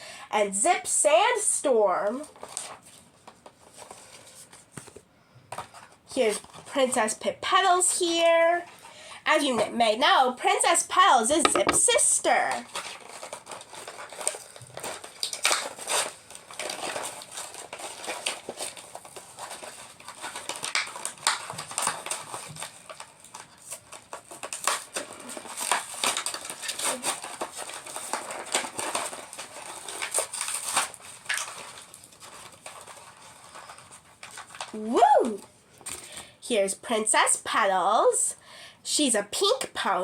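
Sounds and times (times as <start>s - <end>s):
toy packaging crackling and rustling: 11.4s - 36.1s.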